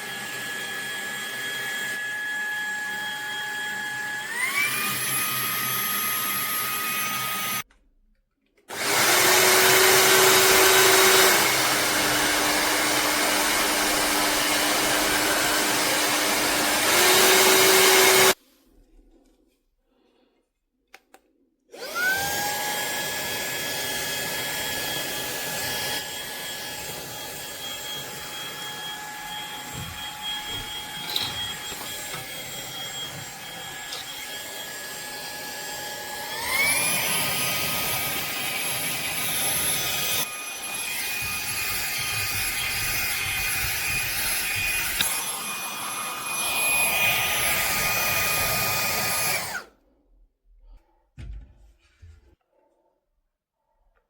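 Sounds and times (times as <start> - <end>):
handheld vacuum motor whine: 0.0 - 7.7, 8.7 - 18.4, 21.7 - 49.8.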